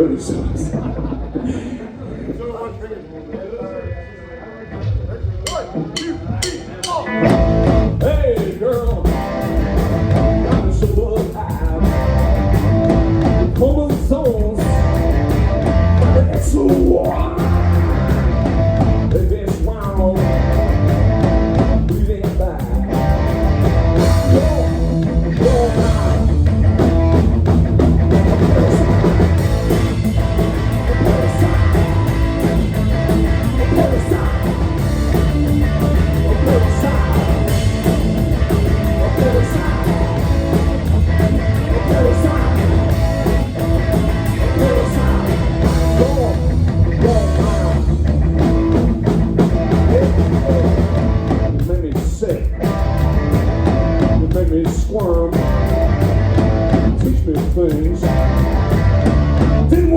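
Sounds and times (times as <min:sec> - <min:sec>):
punk rock band playing: 0:04.8 - 0:59.9
person singing: 0:24.0 - 0:26.8, 0:30.6 - 0:47.9.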